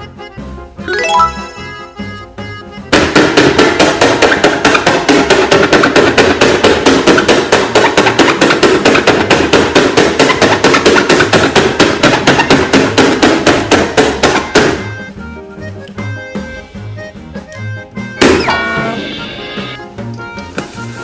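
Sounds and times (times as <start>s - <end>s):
rapid steady knocking: 2.9s - 14.8s.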